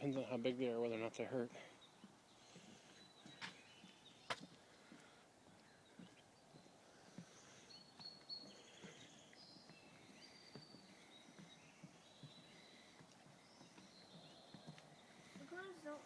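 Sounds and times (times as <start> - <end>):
faint birdsong: 0.0 - 16.0
footfalls on a trail: 2.6 - 5.2.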